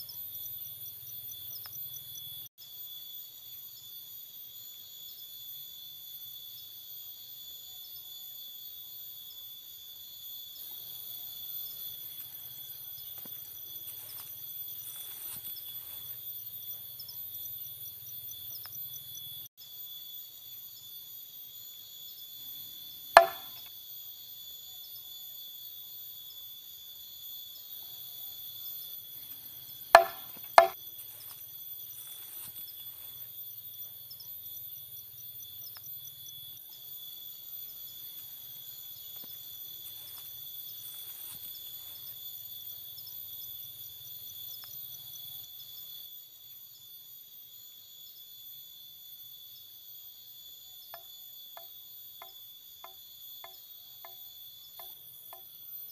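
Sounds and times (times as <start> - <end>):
crickets and insects trilling: 0.0 - 55.9
sharp knock: 23.2 - 23.6, 30.0 - 30.8.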